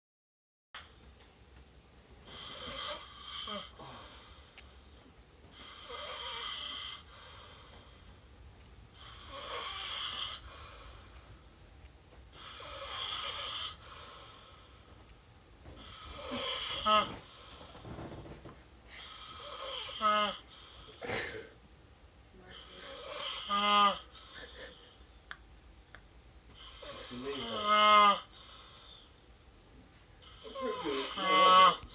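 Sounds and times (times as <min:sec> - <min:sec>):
person snoring: 0:02.2 - 0:04.6, 0:05.5 - 0:08.0, 0:09.0 - 0:11.2, 0:12.4 - 0:14.8, 0:15.8 - 0:18.2, 0:18.9 - 0:21.5, 0:22.4 - 0:25.0, 0:26.6 - 0:29.1, 0:30.2 - 0:31.9.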